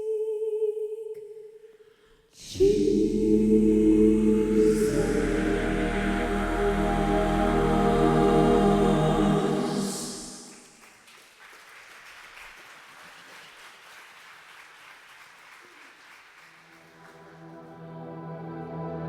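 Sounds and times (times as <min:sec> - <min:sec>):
choir with accompaniment: 0:00.0 - 0:01.8, 0:02.4 - 0:10.7, 0:17.1 - 0:19.0
quiet applause: 0:10.5 - 0:17.6.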